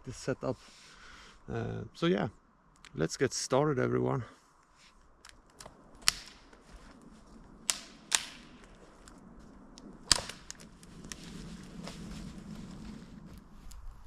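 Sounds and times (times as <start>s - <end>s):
quiet forest background: 0.0s - 14.0s
sharp snaps and clicks: 2.7s - 3.0s, 4.6s - 6.6s, 7.6s - 11.2s.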